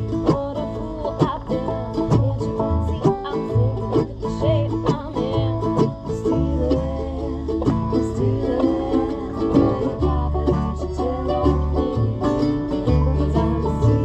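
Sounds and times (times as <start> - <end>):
banjo picking: 0.0 - 14.0
bluegrass band jamming: 0.0 - 14.0
guitar picking: 0.0 - 14.0.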